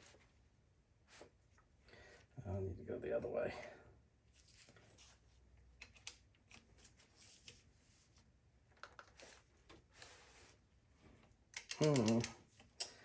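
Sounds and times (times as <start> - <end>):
hand tools clicking and scraping: 11.6 - 13.0.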